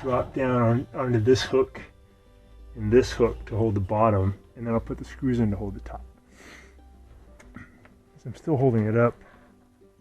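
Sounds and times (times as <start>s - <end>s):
soft background music: 0.0s - 10.0s.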